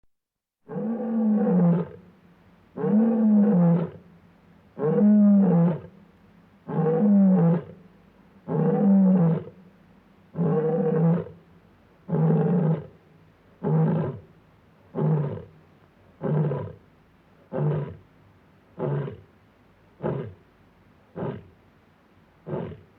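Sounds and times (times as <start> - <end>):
lion roaring: 22.5 - 22.9.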